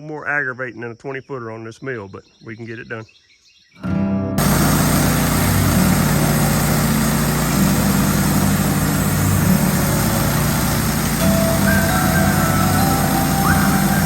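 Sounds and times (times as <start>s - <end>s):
bandsaw mill gas engine running: 4.4s - 14.0s.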